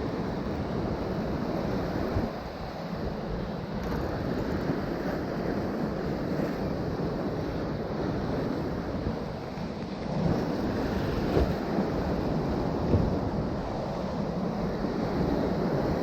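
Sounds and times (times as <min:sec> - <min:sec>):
ocean surf: 0:00.0 - 0:16.0
wind buffeting microphone: 0:00.0 - 0:16.0.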